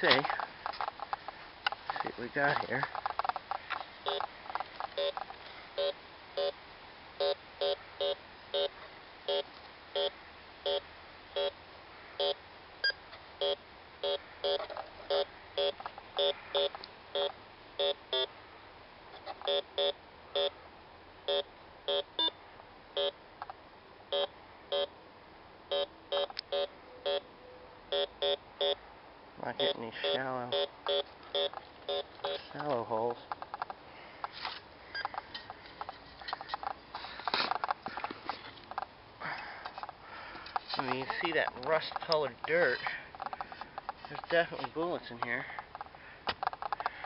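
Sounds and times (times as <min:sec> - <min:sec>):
metal detector beeps: 0:04.0 - 0:04.3, 0:04.9 - 0:05.2, 0:05.8 - 0:06.6, 0:07.2 - 0:08.7, 0:11.4 - 0:11.6, 0:12.2 - 0:18.3, 0:19.4 - 0:20.6, 0:21.3 - 0:22.4, 0:24.1 - 0:24.9, 0:25.7 - 0:27.2, 0:27.9 - 0:28.8, 0:29.6 - 0:32.6, 0:34.9 - 0:35.2.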